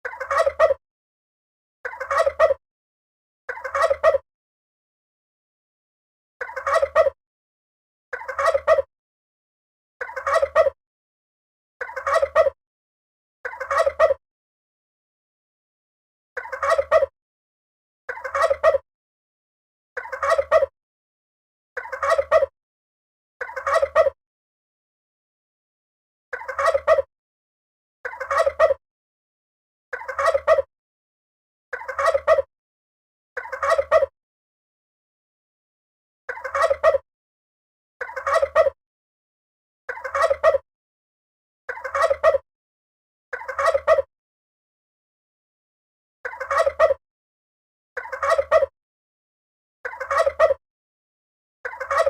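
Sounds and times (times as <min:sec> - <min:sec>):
turkey gobbling: 0:00.0 - 0:00.8, 0:01.9 - 0:02.6, 0:03.5 - 0:04.2, 0:06.4 - 0:07.2, 0:08.2 - 0:08.9, 0:10.0 - 0:10.8, 0:11.8 - 0:12.6, 0:13.5 - 0:14.2, 0:16.4 - 0:17.1, 0:18.1 - 0:18.8, 0:20.0 - 0:20.7, 0:21.8 - 0:22.5, 0:23.4 - 0:24.2, 0:26.4 - 0:27.1, 0:28.1 - 0:28.8, 0:30.0 - 0:30.7, 0:31.8 - 0:32.5, 0:33.4 - 0:34.1, 0:36.3 - 0:37.0, 0:38.0 - 0:38.8, 0:39.9 - 0:40.6, 0:41.7 - 0:42.4, 0:43.4 - 0:44.1, 0:46.3 - 0:47.0, 0:48.0 - 0:48.7, 0:49.9 - 0:50.6, 0:51.7 - 0:52.0
turkey calling: 0:36.3 - 0:37.0, 0:38.0 - 0:38.8, 0:39.9 - 0:40.6, 0:41.7 - 0:42.4, 0:43.4 - 0:44.1, 0:46.3 - 0:47.0, 0:48.0 - 0:48.7, 0:49.9 - 0:50.6, 0:51.7 - 0:52.0.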